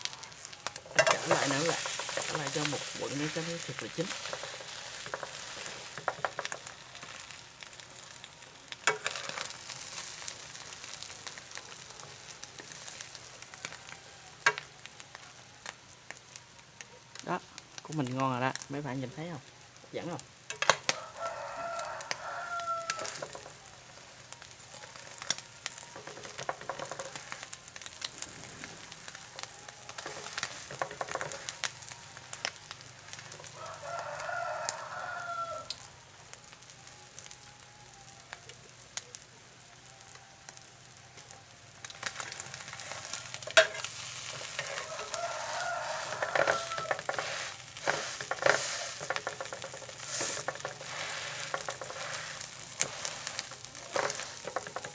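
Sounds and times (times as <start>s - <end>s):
omelette sizzling in oil: 0.0s - 54.9s
rooster crowing: 20.8s - 24.0s, 33.1s - 35.9s, 42.1s - 54.9s.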